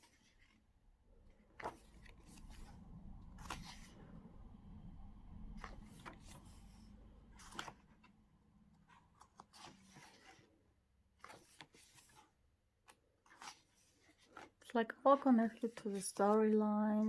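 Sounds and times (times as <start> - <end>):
paper pages rustling: 0.0 - 0.6, 1.3 - 2.8, 3.4 - 4.0, 5.6 - 8.1, 8.8 - 14.6.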